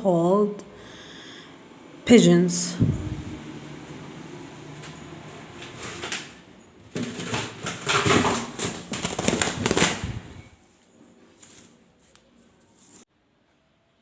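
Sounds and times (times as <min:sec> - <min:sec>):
pigeon flapping wings: 0:07.0 - 0:10.4.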